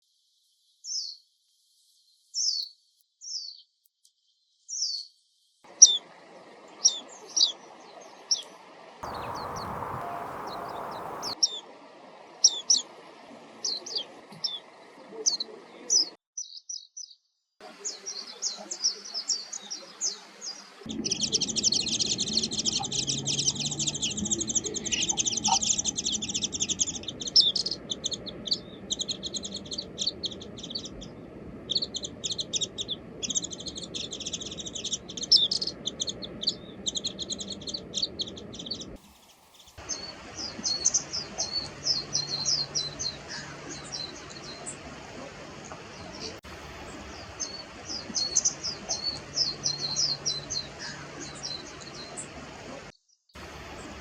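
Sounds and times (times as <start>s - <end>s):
birds twittering and warbling: 6.7s - 11.6s, 17.7s - 54.0s.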